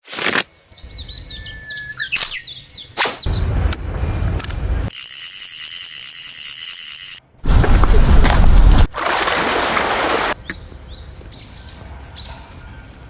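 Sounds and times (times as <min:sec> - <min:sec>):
bird chirping: 0:00.5 - 0:04.4, 0:10.4 - 0:12.3
low rumble: 0:03.3 - 0:04.9, 0:07.4 - 0:08.9.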